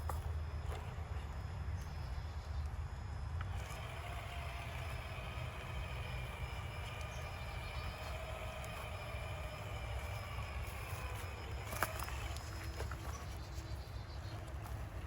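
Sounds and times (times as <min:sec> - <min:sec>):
electric motor whining: 0:03.5 - 0:15.0.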